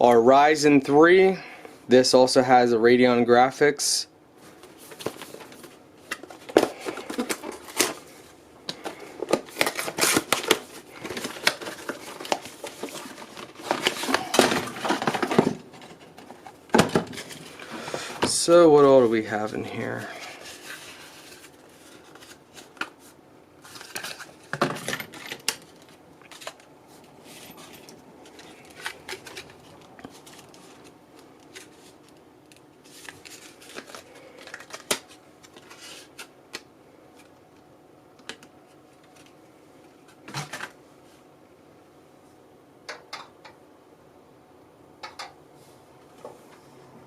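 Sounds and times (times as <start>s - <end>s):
hands handling packaging: 4.4s - 40.8s
clatter of computer parts: 8.7s - 17.5s, 23.7s - 26.7s, 40.1s - 40.8s.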